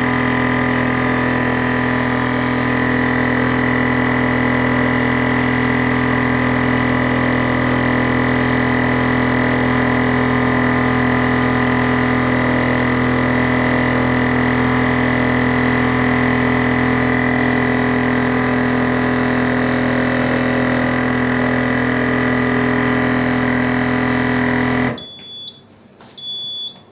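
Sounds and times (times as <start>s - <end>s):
vortex mixer motor hum: 0.0s - 25.6s
short high beep: 25.0s - 26.9s.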